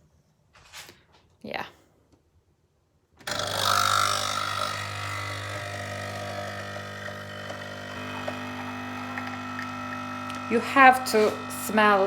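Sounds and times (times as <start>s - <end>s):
coffee machine pump buzzing: 3.2s - 12.0s.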